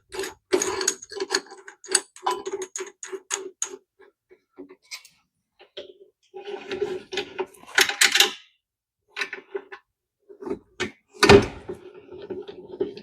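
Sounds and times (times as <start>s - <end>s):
light clinks and knocks of metal parts: 0.0s - 3.8s, 4.8s - 5.2s.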